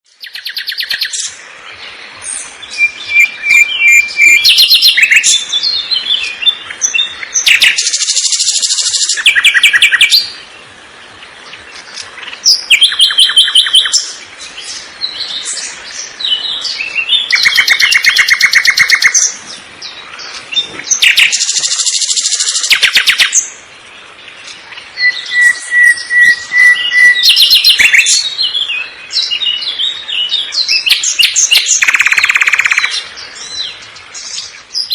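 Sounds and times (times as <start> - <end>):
songbirds trilling: 0.1 - 34.9
thin held bird whistle: 25.0 - 28.1.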